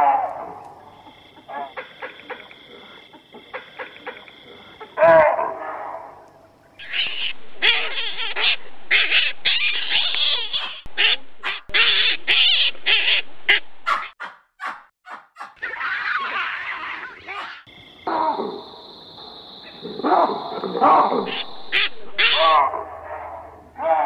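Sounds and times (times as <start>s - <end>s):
animal calls: 0.0s - 24.0s.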